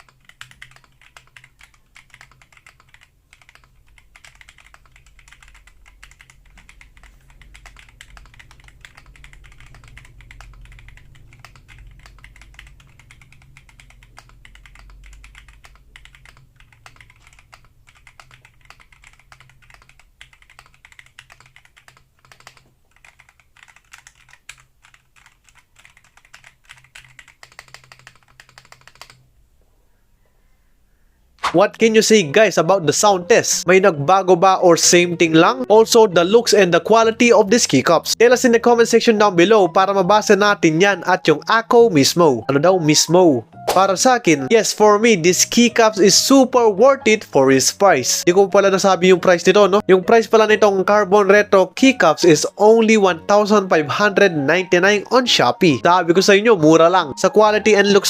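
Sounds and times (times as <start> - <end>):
mechanical keyboard typing clicks: 0.0 - 29.2.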